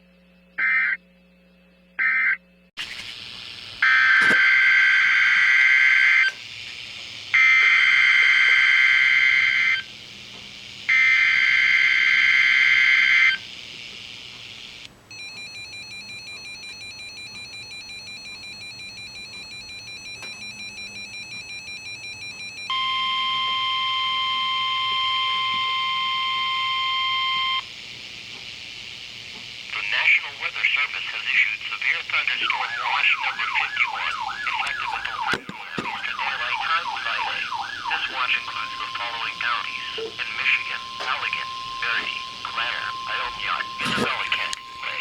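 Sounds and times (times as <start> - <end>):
steady radio alert tone: 0.6 - 1.0, 3.8 - 6.4, 7.4 - 9.9, 10.8 - 13.4, 15.1 - 27.6, 29.7 - 45.0
digital data screeches: 29.8 - 45.0.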